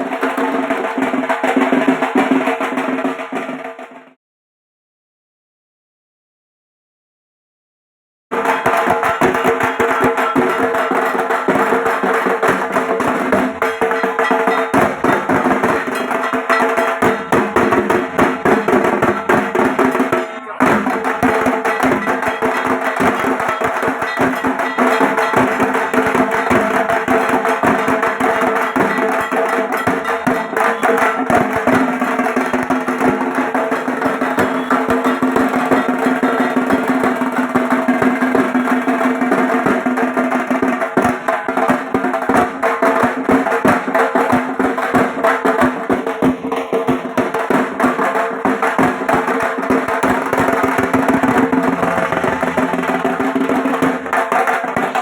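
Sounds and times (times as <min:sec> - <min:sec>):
barrel drum beaten with sticks: 0:08.3 - 0:55.0.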